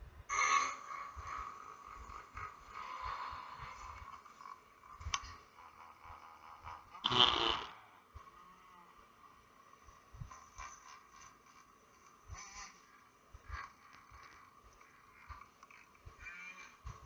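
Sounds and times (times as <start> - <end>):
faint clicks and rustles: 8.0 - 17.0.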